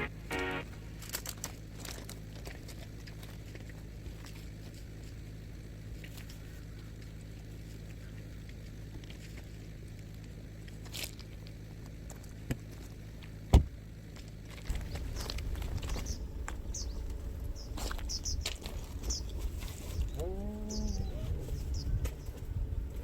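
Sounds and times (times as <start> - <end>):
low rumbling noise: 0.0 - 11.8, 13.4 - 23.0
small birds chirping: 14.7 - 23.0
low cooing call: 15.9 - 22.9.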